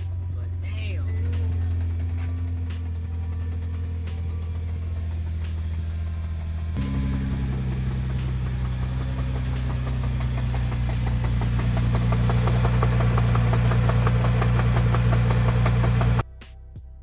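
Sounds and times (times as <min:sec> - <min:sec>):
car engine idling: 0:00.0 - 0:16.2
fast rattling knock: 0:06.8 - 0:16.2.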